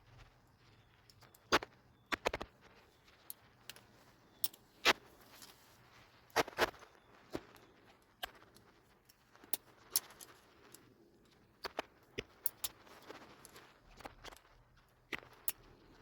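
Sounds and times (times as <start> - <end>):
small metal clicks and taps: 1.0 - 2.5, 3.2 - 5.6, 7.3 - 15.8.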